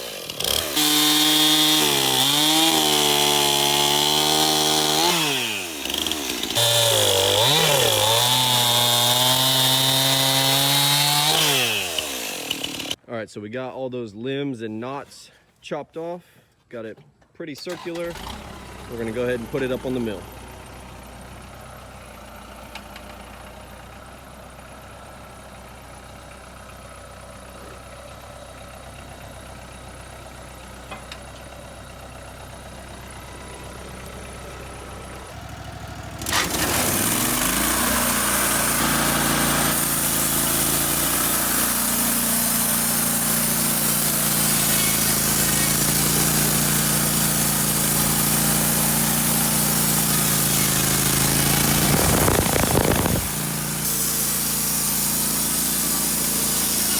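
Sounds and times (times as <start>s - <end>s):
engine revving up loudly: 0.0s - 12.4s, 36.2s - 56.9s
engine running quietly: 17.7s - 36.7s.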